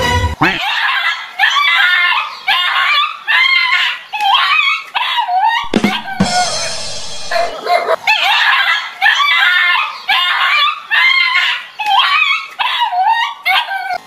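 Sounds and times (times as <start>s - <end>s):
dog barking and yelping: 4.4s - 11.4s, 12.0s - 14.0s.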